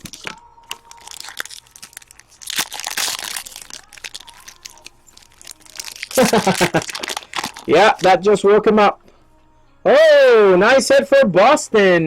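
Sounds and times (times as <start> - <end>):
packaging crinkling: 0.0 - 8.2.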